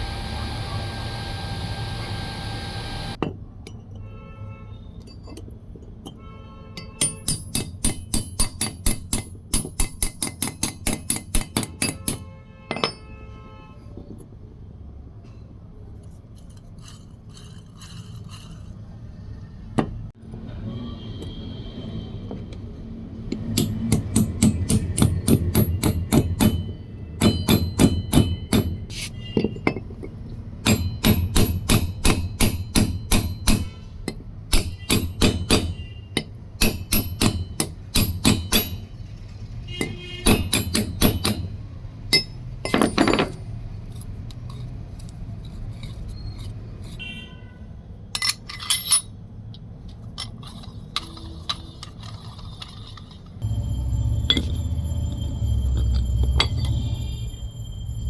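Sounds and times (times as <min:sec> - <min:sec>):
motor running: 0:00.0 - 0:03.2
hammer striking steel: 0:06.8 - 0:13.2, 0:23.3 - 0:29.8, 0:30.6 - 0:39.0, 0:39.8 - 0:43.4.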